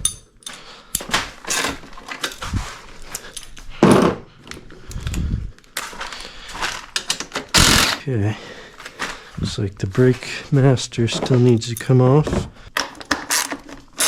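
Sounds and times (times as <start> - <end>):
tools and metal parts clinking: 0.0 - 5.2, 5.8 - 8.0, 11.0 - 14.0.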